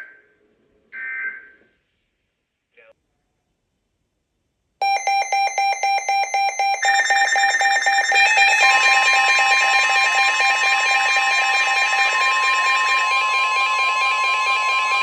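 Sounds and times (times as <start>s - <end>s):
overlapping alert tones: 4.8s - 15.0s
rapid pulsing alarm beep: 4.8s - 15.0s
steady alarm tone: 4.8s - 15.0s.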